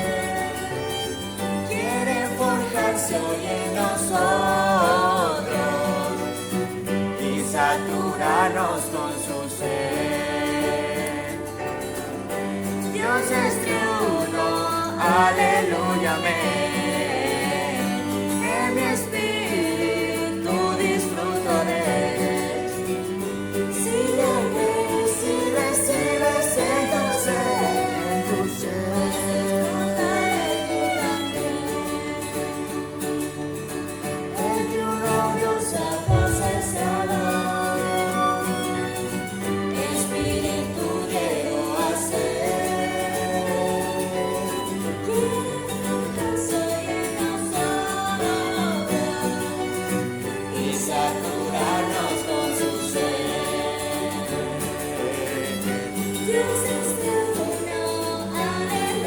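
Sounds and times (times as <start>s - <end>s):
group singing a hymn: 0.0s - 59.0s
instrumental accompaniment: 0.0s - 59.0s.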